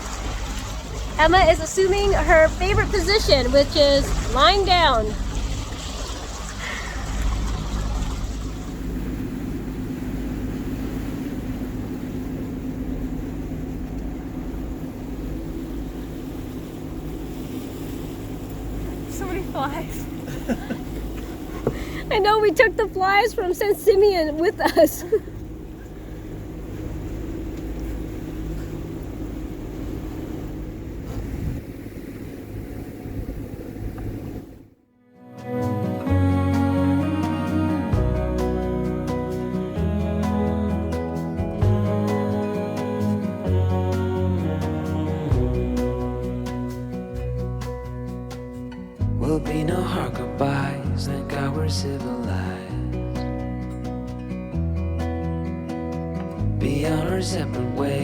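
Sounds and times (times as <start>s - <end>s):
water splashing against hull: 0.0s - 34.7s
boat engine humming: 0.0s - 58.0s
wind noise: 30.2s - 34.6s.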